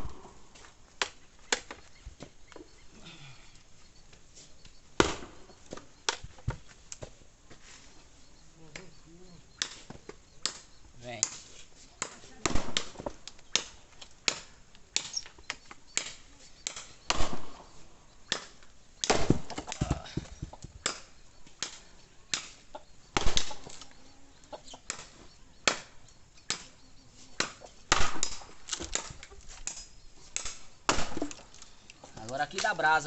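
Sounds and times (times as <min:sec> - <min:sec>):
firewood knocks and cracks: 0:05.0 - 0:07.1, 0:09.6 - 0:11.4, 0:12.0 - 0:17.7, 0:18.3 - 0:23.9, 0:27.4 - 0:32.9.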